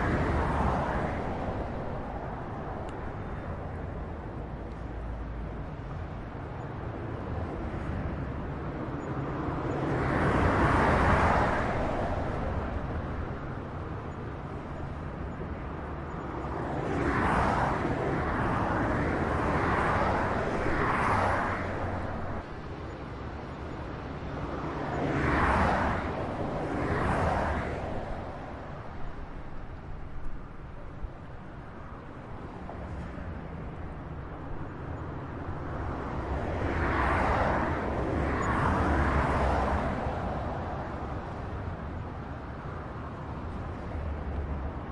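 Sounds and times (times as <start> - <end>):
highway traffic hum: 0.0 - 44.9
vehicles passing: 0.0 - 44.9.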